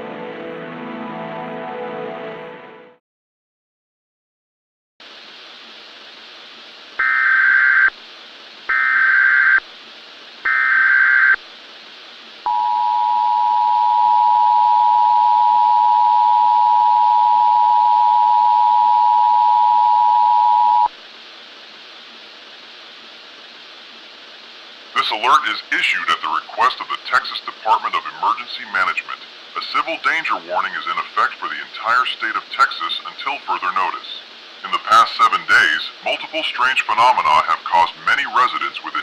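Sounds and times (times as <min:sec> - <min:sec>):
static hiss: 0:05.0 - 0:39.0
two-tone attention signal: 0:12.5 - 0:20.9.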